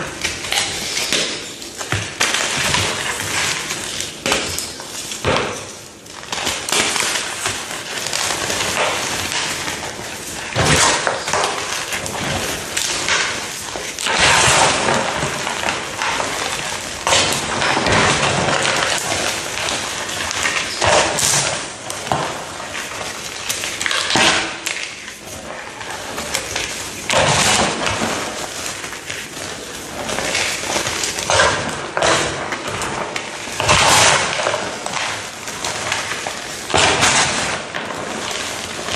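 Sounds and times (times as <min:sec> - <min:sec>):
brittle material crunching: 0:00.0 - 0:38.9.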